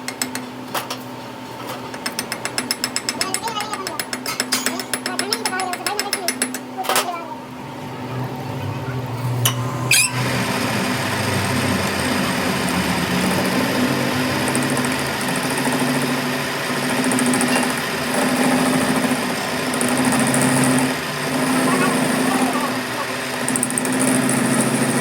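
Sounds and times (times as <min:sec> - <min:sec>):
machine motor humming: 0:06.6 - 0:25.0.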